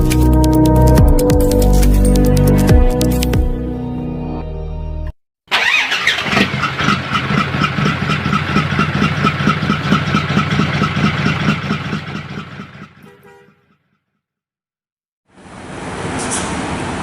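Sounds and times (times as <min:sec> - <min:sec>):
diesel truck engine running: 0:05.5 - 0:13.0.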